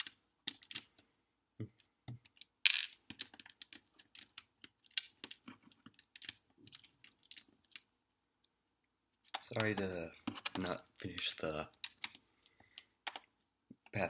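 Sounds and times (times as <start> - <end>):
plastic toy bricks clicking: 0.0 - 0.9, 2.2 - 7.9.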